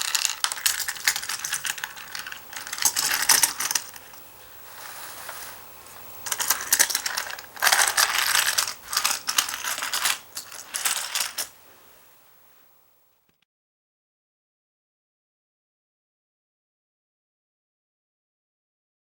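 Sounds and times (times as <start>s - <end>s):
plastic toy parts clicking rapidly: 0.0s - 4.2s, 6.2s - 11.5s.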